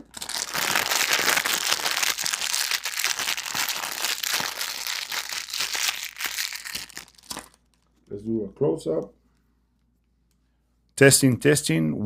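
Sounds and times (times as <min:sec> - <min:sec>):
bag crumpling and crinkling: 0:00.0 - 0:07.8.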